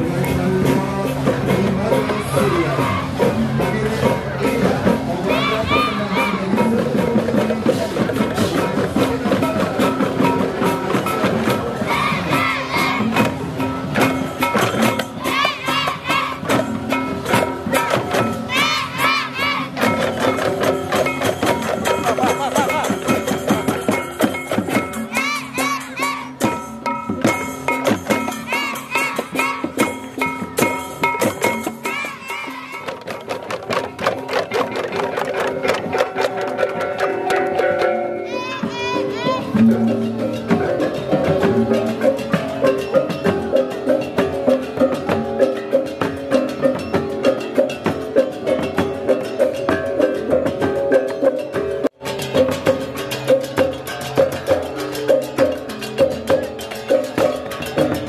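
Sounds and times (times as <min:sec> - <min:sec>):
gamelan music: 0:00.0 - 0:58.0
cymbals clashing: 0:07.8 - 0:33.2.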